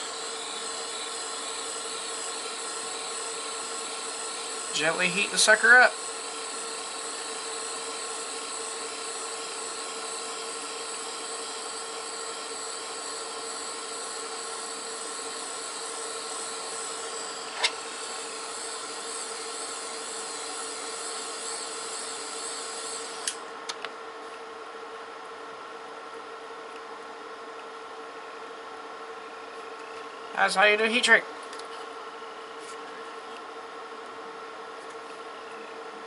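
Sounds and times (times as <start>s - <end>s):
torch hissing with thin whine: 0.0s - 23.4s.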